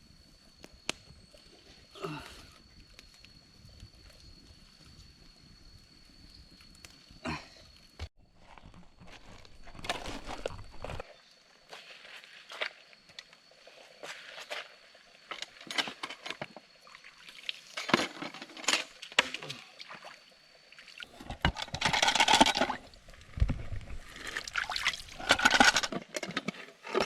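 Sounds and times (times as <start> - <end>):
water splashing and pouring: 24.0 - 25.9.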